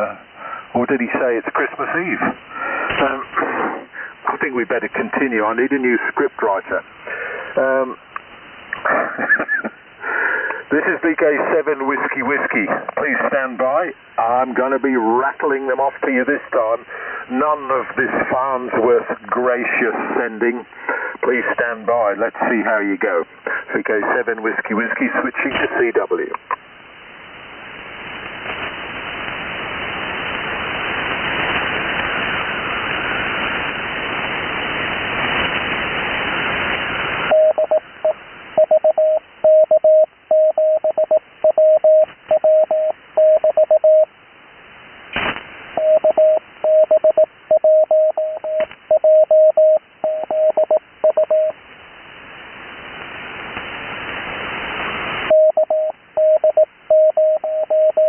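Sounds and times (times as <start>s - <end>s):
radio band hiss: 0.0s - 58.0s
morse code tone: 37.3s - 44.1s, 45.8s - 51.5s, 55.3s - 58.0s.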